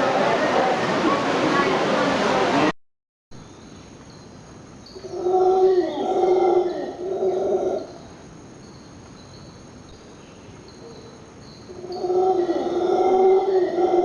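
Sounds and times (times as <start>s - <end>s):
animal howling: 5.0s - 7.9s, 11.7s - 14.0s.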